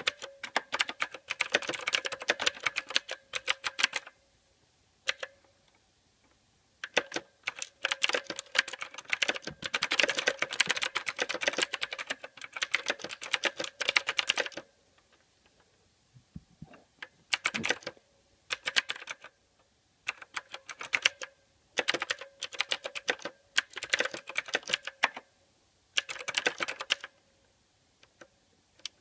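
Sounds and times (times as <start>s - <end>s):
typing on mechanical keyboard: 0.0s - 4.2s, 5.1s - 5.3s, 6.8s - 14.7s, 17.3s - 19.4s, 20.1s - 25.3s, 26.0s - 27.2s.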